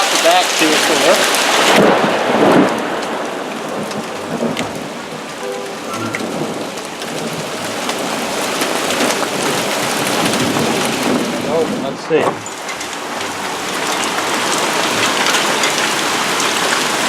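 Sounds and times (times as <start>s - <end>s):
sharp ticks of hailstones: 0.0s - 11.4s, 12.4s - 17.0s
heavy rain: 0.0s - 17.0s.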